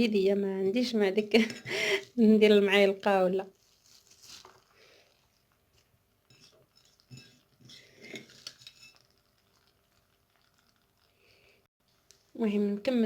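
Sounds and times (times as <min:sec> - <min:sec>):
onion rustling by hand: 0:03.4 - 0:06.0.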